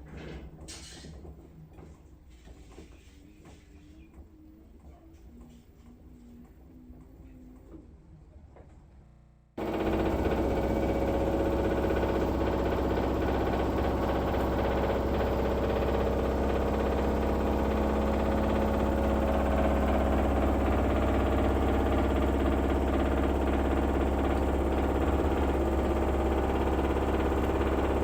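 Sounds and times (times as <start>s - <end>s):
washing machine spinning: 9.6s - 28.0s.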